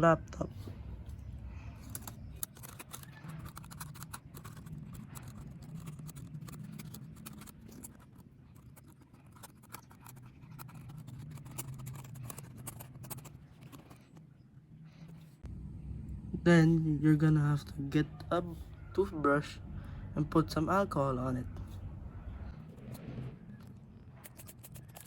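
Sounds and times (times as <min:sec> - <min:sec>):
toothpick scratching laptop crevices: 0:01.7 - 0:15.4, 0:22.6 - 0:25.0.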